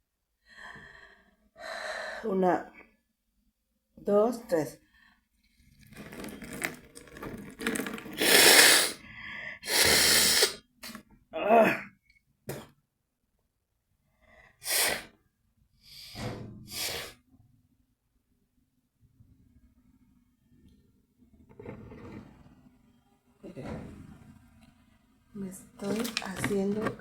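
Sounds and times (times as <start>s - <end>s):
person blowing nose hard: 7.6s - 9.0s, 9.6s - 10.7s, 14.6s - 15.1s, 16.7s - 17.2s.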